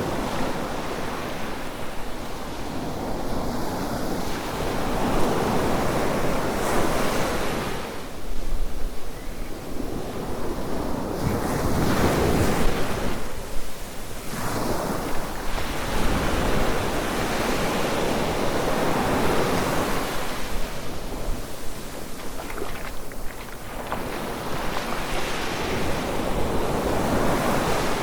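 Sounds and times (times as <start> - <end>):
waves breaking on sand beach: 10.2 - 28.0.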